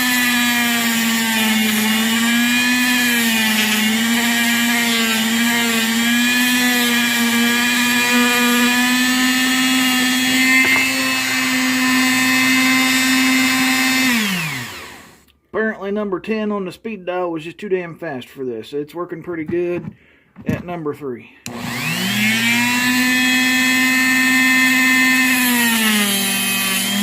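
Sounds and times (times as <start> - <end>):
rotary tool cutting whine: 0.0 - 15.2, 21.5 - 27.0.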